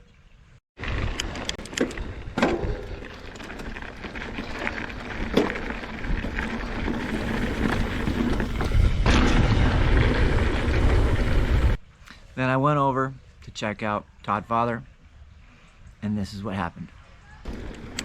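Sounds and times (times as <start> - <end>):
bike knocking over rough ground: 0.8 - 11.8
bike tyres rumbling over dirt: 0.8 - 11.8
wind buffeting microphone: 0.8 - 11.8.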